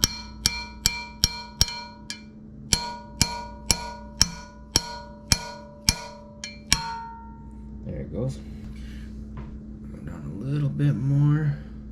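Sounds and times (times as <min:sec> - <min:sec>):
metal-on-metal tapping with ring: 0:00.0 - 0:07.7.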